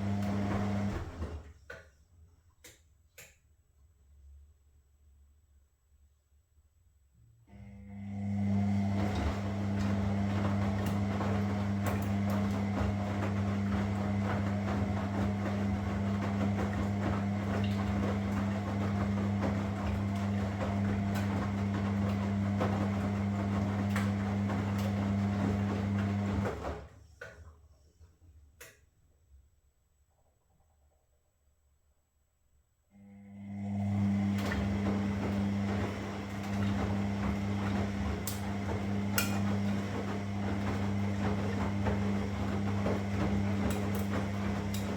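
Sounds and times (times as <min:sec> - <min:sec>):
washing machine running: 0:00.0 - 0:01.8, 0:07.5 - 0:28.7, 0:33.0 - 0:44.9.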